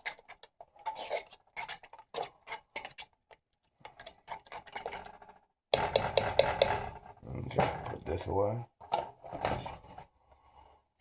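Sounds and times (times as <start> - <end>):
spoon stirring gravy in a pot: 0.0 - 7.2.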